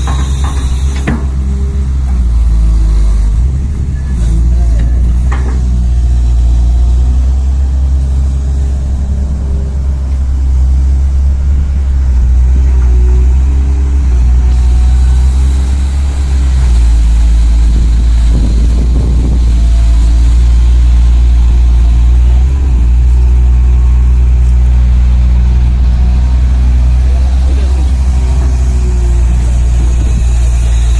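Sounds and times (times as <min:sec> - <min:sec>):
simulated diesel engine: 0:00.0 - 0:30.9.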